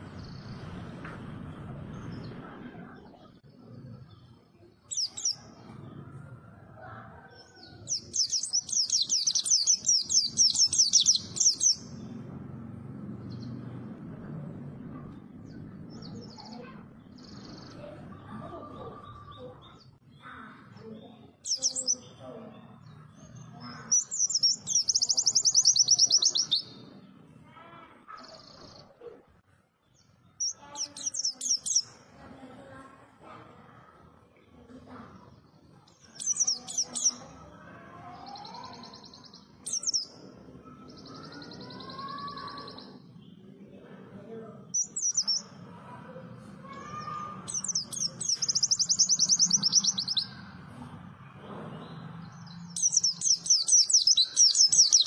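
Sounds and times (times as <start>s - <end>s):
bird twittering song: 3.1s - 5.9s, 7.4s - 12.2s, 19.0s - 26.9s, 29.8s - 32.0s, 35.7s - 37.4s, 38.2s - 43.5s, 44.6s - 45.6s, 46.8s - 50.5s, 51.7s - 55.0s.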